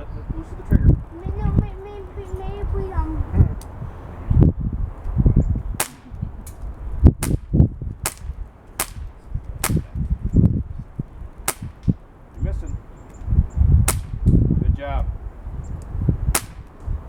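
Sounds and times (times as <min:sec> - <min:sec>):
low rumbling thuds: 0:00.6 - 0:17.0
bb pistol firing: 0:05.8 - 0:06.6, 0:07.2 - 0:10.1, 0:11.4 - 0:12.0, 0:13.9 - 0:14.4, 0:16.3 - 0:16.8.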